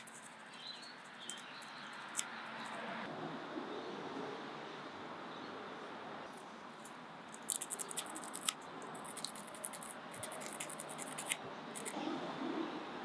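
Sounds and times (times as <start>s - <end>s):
sandpaper scratching metal: 7.4s - 12.0s.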